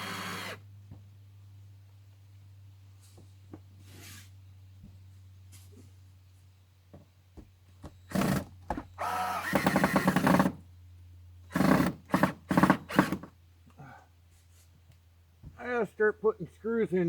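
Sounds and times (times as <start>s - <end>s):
power drill driving screws: 0.0s - 0.6s, 8.1s - 10.6s, 11.5s - 13.3s.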